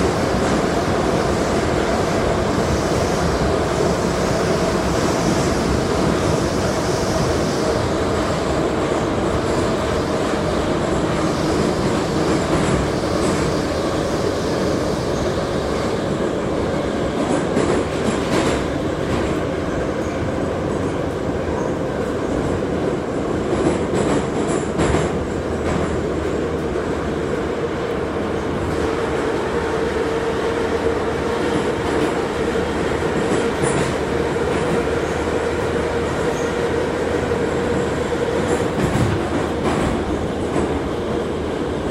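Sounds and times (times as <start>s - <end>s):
train wheels rumbling on rails: 0.0s - 41.9s
rail joint clicks: 16.7s - 22.6s, 23.4s - 29.4s, 31.3s - 41.2s.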